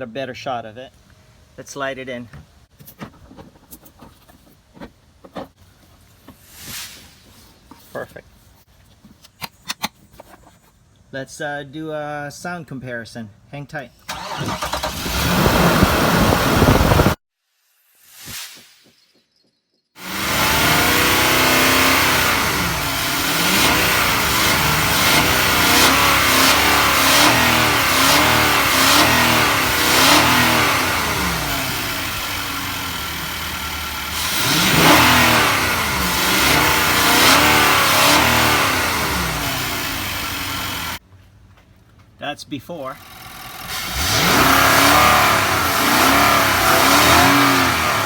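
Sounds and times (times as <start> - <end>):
car engine revving: 14.1 - 17.2, 20.0 - 41.0, 43.0 - 48.0.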